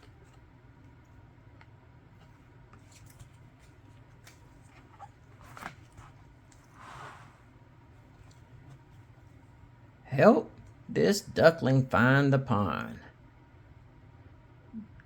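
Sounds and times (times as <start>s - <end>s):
page turning: 2.3s - 7.3s.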